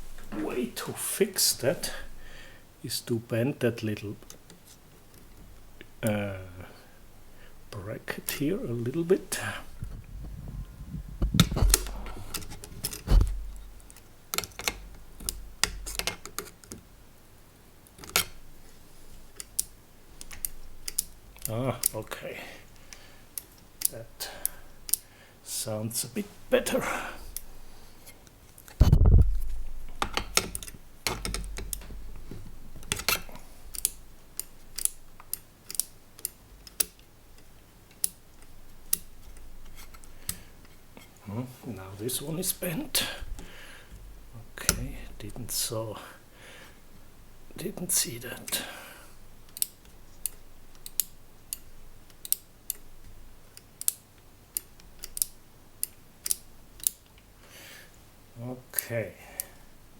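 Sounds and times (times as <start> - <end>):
loud low thump: 9.8 - 11.8, 28.8 - 29.4
rotary switches clicking: 19.4 - 22.0, 32.8 - 37.0, 49.5 - 54.0, 54.6 - 57.0.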